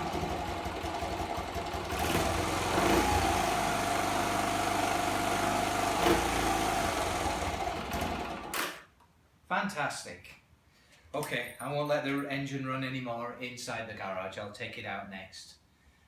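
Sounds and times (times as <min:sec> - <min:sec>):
small motorcycle engine idling: 0:00.0 - 0:08.6.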